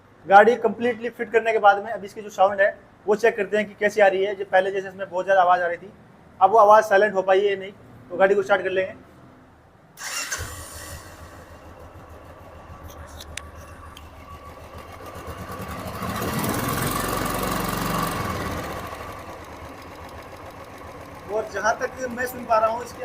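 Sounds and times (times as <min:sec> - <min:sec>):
motorcycle engine starting and idling: 0:10.0 - 0:23.0.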